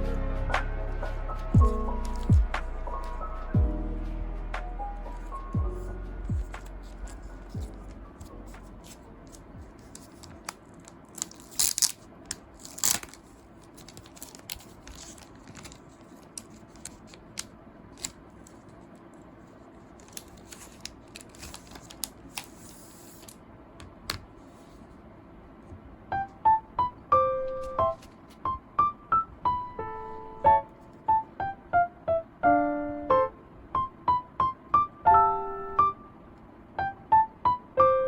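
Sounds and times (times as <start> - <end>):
packaging clicks and taps: 2.0 - 2.3, 20.0 - 22.6
packaging tearing: 2.0 - 2.3, 8.8 - 18.6, 20.0 - 23.4.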